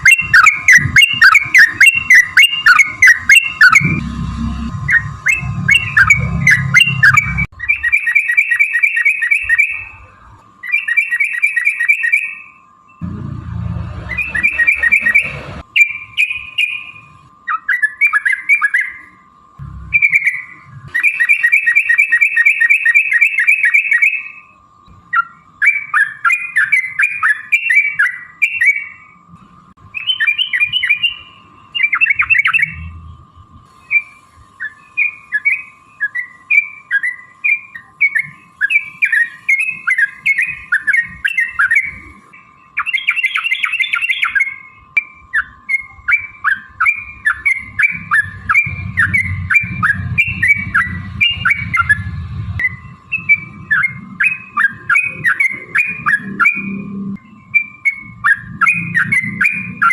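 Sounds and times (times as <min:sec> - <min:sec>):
faint steady whine: 0:00.0 - 0:59.9
low rumble: 0:03.8 - 0:07.5, 0:13.0 - 0:15.6, 0:19.6 - 0:20.1, 0:48.6 - 0:53.7
bird singing chattering chirps: 0:10.6 - 0:13.0, 0:14.1 - 0:19.1, 0:19.8 - 0:29.2, 0:29.9 - 0:33.1, 0:33.7 - 0:59.9.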